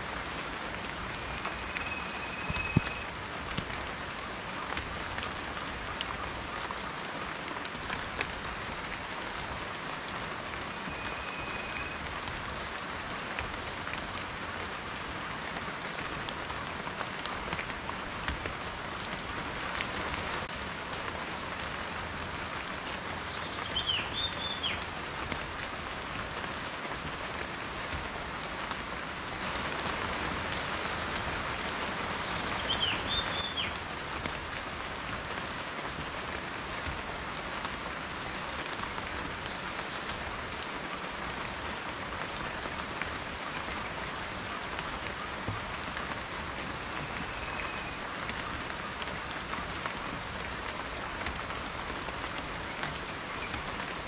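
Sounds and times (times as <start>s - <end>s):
rain pattering: 0.0s - 54.0s.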